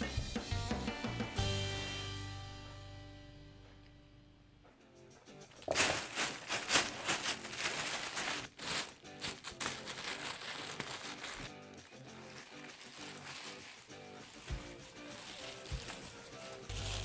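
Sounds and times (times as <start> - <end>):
background music: 0.0 - 17.0
bag crinkling and rustling: 5.5 - 17.0.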